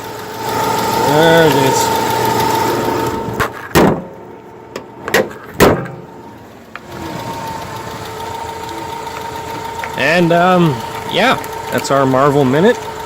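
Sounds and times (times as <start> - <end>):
car engine idling: 0.0 - 13.0
sharp knocks and clunks: 3.4 - 6.1.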